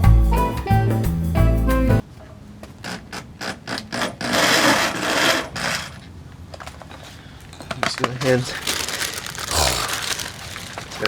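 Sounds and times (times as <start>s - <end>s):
swing jazz music: 0.0s - 2.0s
power drill rasping: 2.8s - 6.0s.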